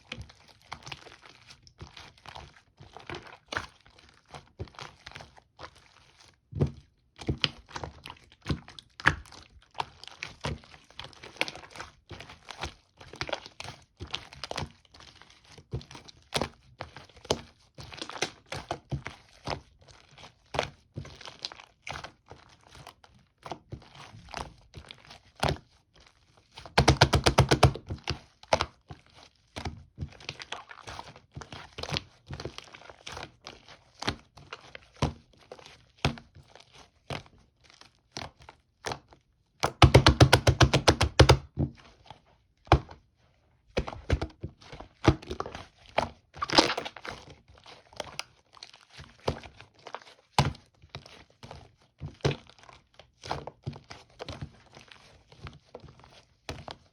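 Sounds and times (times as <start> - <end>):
slime squelching and clicking: 26.8 - 27.9, 43.8 - 47.2
loud crackling slime pops: 46.4 - 47.0.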